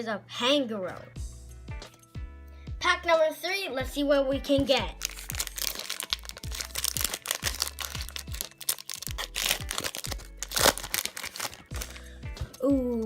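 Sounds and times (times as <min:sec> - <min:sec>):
background music with steady beat: 0:00.0 - 0:13.0
foil pack crinkling and tearing: 0:05.0 - 0:12.2.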